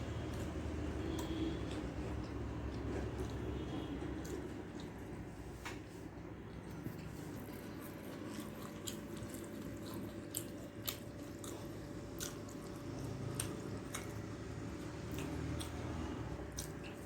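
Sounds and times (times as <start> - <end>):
person chewing: 0.2 - 5.2, 6.5 - 17.0.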